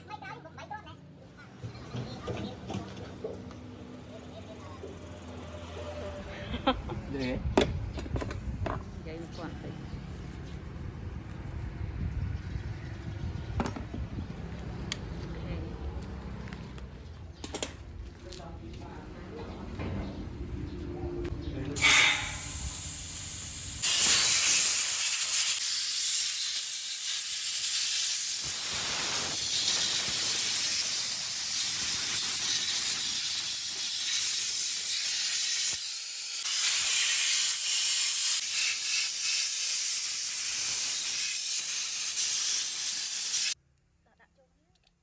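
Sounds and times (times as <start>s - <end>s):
compressed air hissing: 21.8s - 43.6s.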